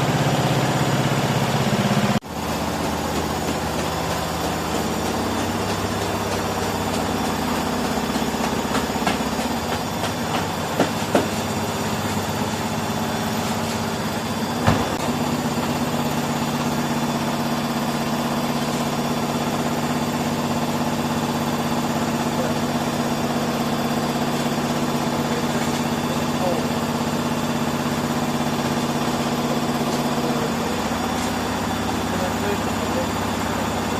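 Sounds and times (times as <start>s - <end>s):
washing machine spinning hum: 0.0s - 33.9s
knocks from washing machine: 2.6s - 12.2s, 14.6s - 15.2s.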